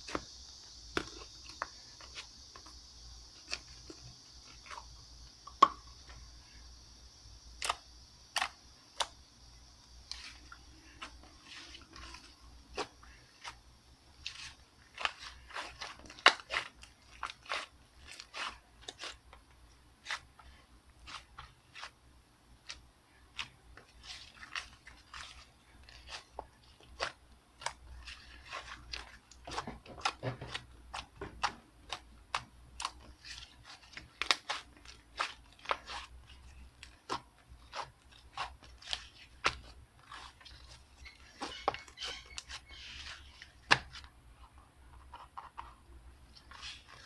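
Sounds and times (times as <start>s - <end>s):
slime crackling and popping: 7.6s - 9.2s, 10.0s - 44.0s.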